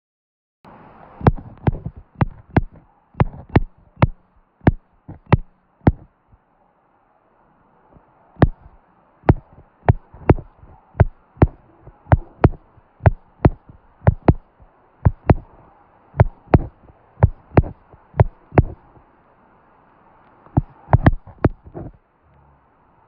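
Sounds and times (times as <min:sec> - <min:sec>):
sharp taps: 0:01.2 - 0:06.1, 0:08.4 - 0:15.5, 0:16.2 - 0:18.9, 0:20.5 - 0:22.0.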